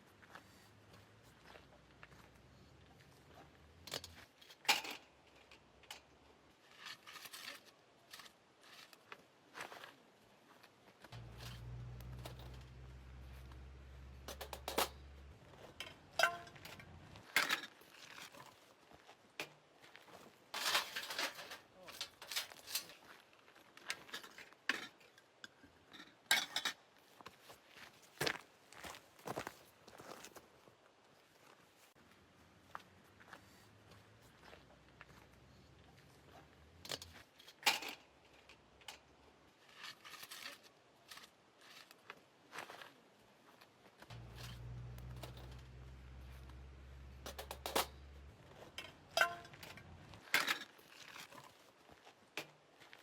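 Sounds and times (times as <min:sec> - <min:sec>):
objects clicking and rustling: 0:03.8 - 0:09.0, 0:11.2 - 0:18.6, 0:20.5 - 0:23.0, 0:36.7 - 0:39.1, 0:44.1 - 0:51.7
faint low hum: 0:11.2 - 0:17.3, 0:44.1 - 0:50.3
cookware clinking and knocking: 0:14.2 - 0:16.9, 0:48.8 - 0:50.5.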